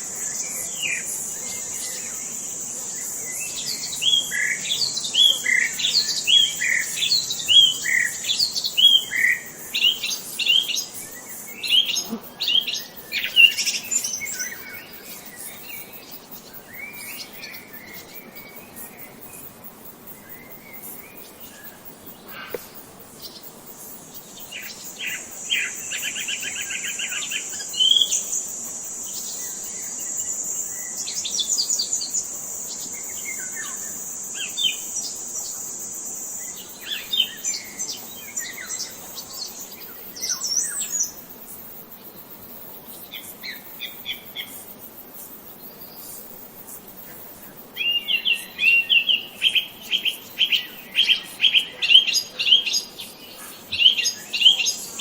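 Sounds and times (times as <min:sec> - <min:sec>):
high-pitched insect buzz: 0:00.0 - 0:55.0
songbirds chirping and trilling: 0:00.0 - 0:55.0.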